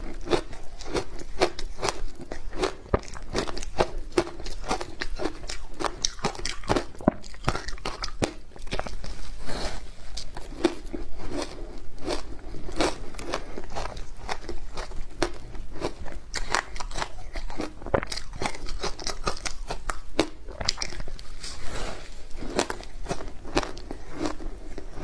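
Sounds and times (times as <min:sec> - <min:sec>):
ice crunching being chewed: 0:00.0 - 0:25.0.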